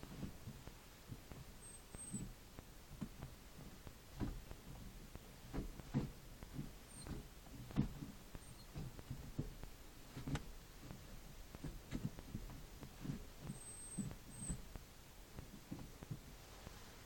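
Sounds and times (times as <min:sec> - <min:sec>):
clutch pedal squeaks: 0:01.6 - 0:02.4, 0:06.5 - 0:09.0, 0:13.0 - 0:14.7
clutch pedal creaks and knocks: 0:05.5 - 0:13.2.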